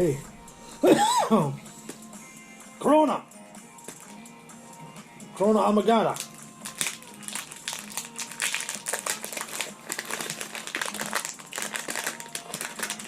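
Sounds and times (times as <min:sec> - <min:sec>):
plastic packaging crinkling: 0:06.1 - 0:13.0.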